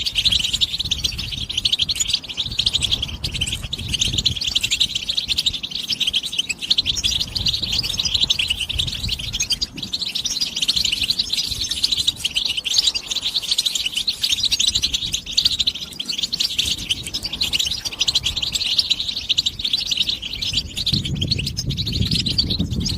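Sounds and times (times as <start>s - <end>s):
bird twittering song: 0.0s - 22.9s.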